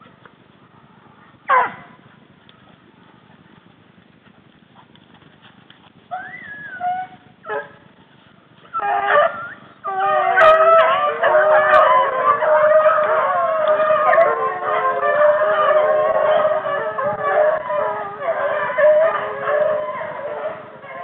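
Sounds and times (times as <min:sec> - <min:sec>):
hounds baying: 0:01.4 - 0:02.2, 0:06.1 - 0:07.9, 0:08.6 - 0:21.0
dog yelp: 0:01.5 - 0:01.9, 0:08.7 - 0:21.0.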